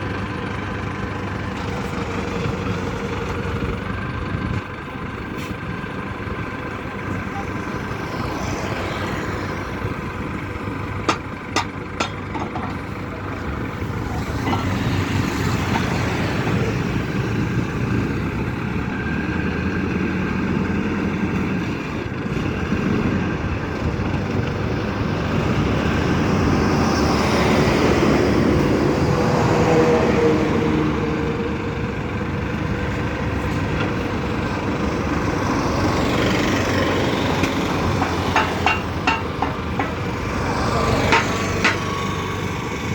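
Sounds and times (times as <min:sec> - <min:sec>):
pile driver engine running: 0:00.0 - 0:42.9
sharp metallic knocks: 0:11.0 - 0:12.8, 0:37.4 - 0:42.1.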